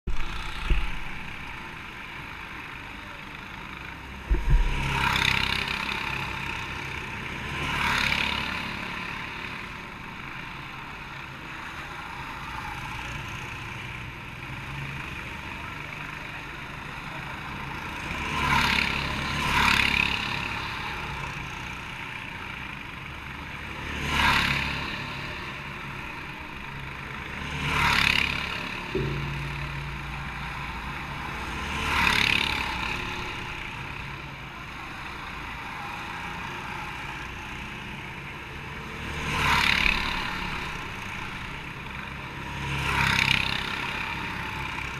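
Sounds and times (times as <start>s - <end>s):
racing karts passing: 0.1s - 44.9s
sharp knock: 4.3s - 5.4s, 28.9s - 30.2s
steady low rumble: 4.3s - 5.6s.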